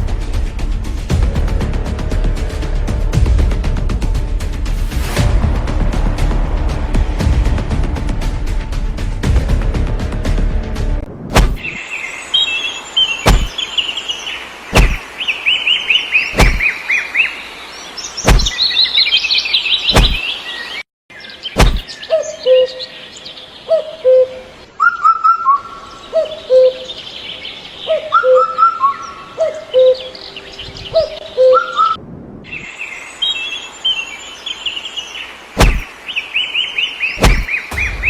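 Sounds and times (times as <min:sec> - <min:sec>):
heavy thuds: 0:11.3 - 0:11.6, 0:13.3 - 0:13.5, 0:14.8 - 0:15.0, 0:16.4 - 0:16.6, 0:18.3 - 0:18.5, 0:20.0 - 0:20.2, 0:21.6 - 0:21.8, 0:35.6 - 0:35.8
birds chirping: 0:11.4 - 0:38.0.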